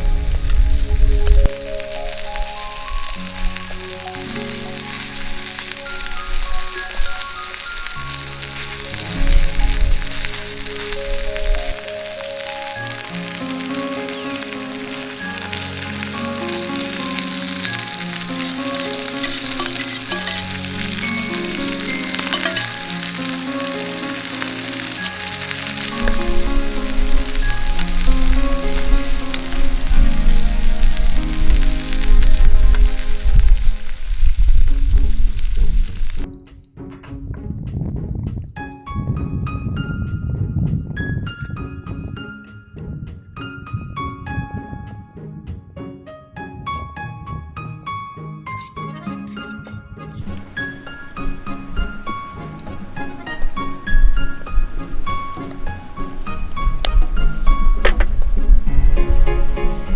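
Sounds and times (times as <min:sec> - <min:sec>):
shrimp sizzling in hot oil: 0:00.0 - 0:36.3, 0:50.2 - 0:59.9
background music of held notes: 0:00.0 - 0:59.9.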